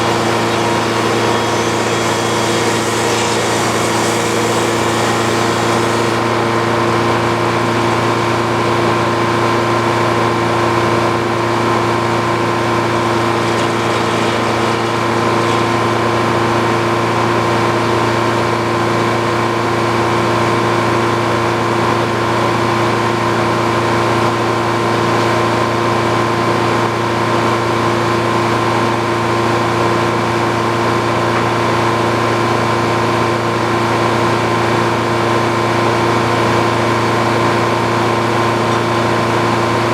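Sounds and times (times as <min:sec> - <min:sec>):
sawmill engine humming: 0:00.0 - 0:09.6, 0:11.6 - 0:19.8.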